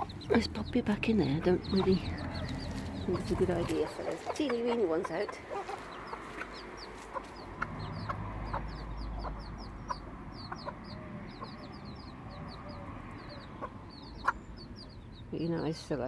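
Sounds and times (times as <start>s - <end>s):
hen clucking softly: 0.0s - 15.0s
chicks peeping: 0.0s - 16.0s.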